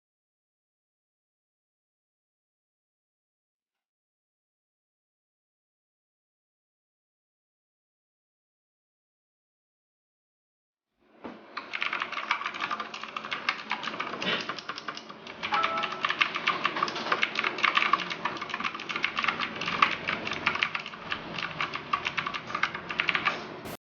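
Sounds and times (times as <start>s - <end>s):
mechanical keyboard typing: 11.6s - 23.5s.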